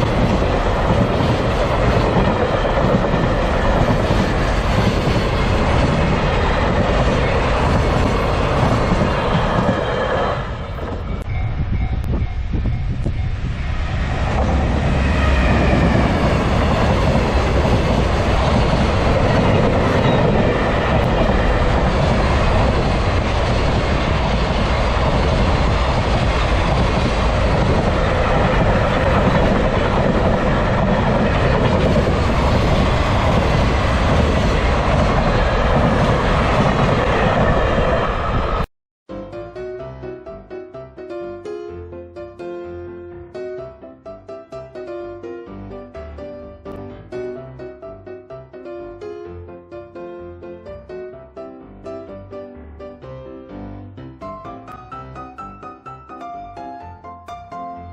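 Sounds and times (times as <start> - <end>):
freight train passing: 0.0 - 38.7, 54.2 - 57.9.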